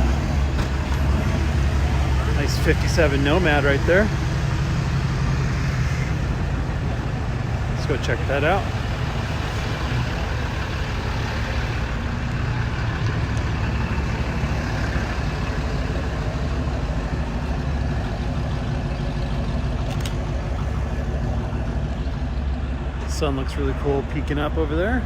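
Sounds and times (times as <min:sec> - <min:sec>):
vehicle engine running: 0:00.0 - 0:25.0.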